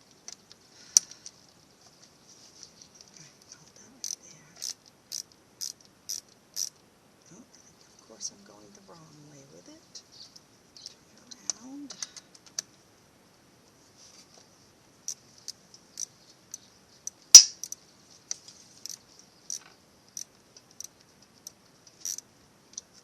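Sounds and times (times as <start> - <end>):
wrench clicking on bolt: 4.0 - 6.7, 18.8 - 22.2.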